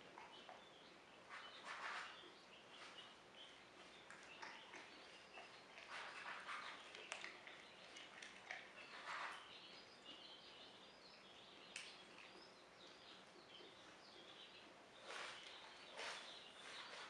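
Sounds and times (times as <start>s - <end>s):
faint birds chirping: 0.0s - 17.0s
soft rustle: 15.0s - 17.0s.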